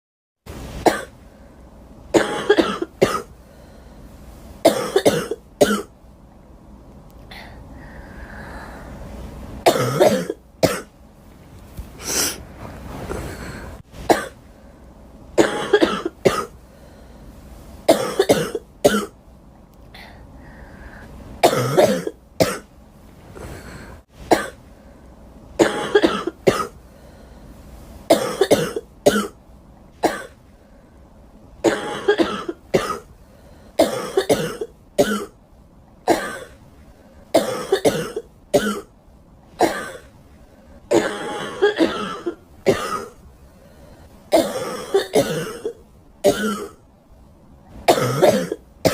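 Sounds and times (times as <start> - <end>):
girl coughing: 2.2 - 3.3, 4.7 - 5.9, 9.7 - 10.9, 15.4 - 16.6, 17.9 - 19.1, 21.4 - 22.6, 25.6 - 26.8, 28.1 - 29.4, 31.6 - 33.1, 33.8 - 35.4, 36.1 - 36.6, 37.4 - 38.9, 39.6 - 40.1, 40.9 - 43.2, 44.3 - 46.8, 47.9 - 48.9.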